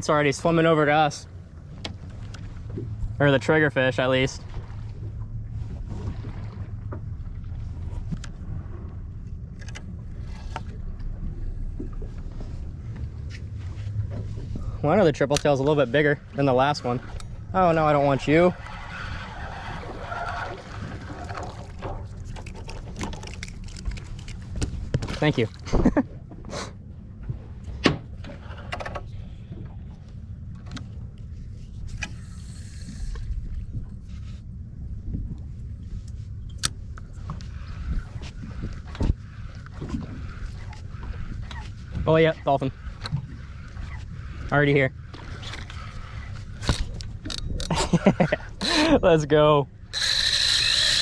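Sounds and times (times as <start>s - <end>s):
boat motor idling: 0.0s - 25.5s, 36.3s - 51.0s
low rumble: 0.0s - 49.9s.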